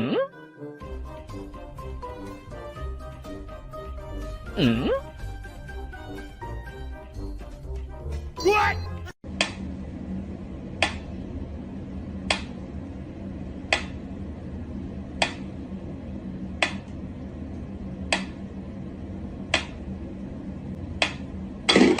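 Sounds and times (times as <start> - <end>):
low steady hum: 9.2 - 22.0.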